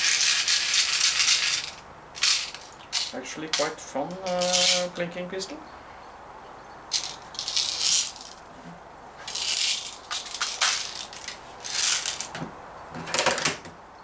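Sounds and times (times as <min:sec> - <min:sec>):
pistol rattling and clicking: 0:00.0 - 0:04.8, 0:06.9 - 0:08.4, 0:09.3 - 0:12.3.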